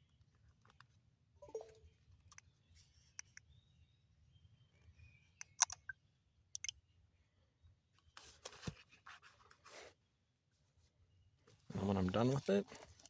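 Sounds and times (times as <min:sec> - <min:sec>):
sharp small clicks: 0:05.4 - 0:06.8
rustling and scraping of objects: 0:08.1 - 0:13.0.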